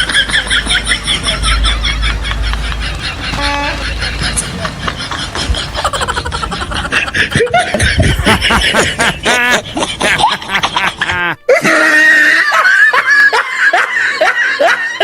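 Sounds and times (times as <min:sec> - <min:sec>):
people laughing and snickering: 0:00.0 - 0:15.0.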